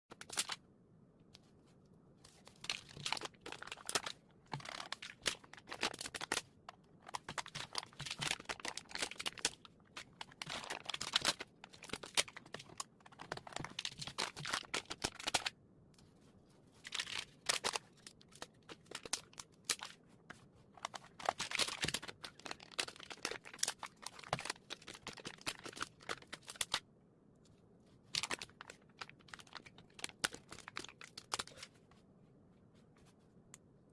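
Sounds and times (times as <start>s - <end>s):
plastic packaging crinkling: 2.3s - 15.5s, 16.8s - 20.0s, 20.8s - 26.8s, 28.0s - 31.7s.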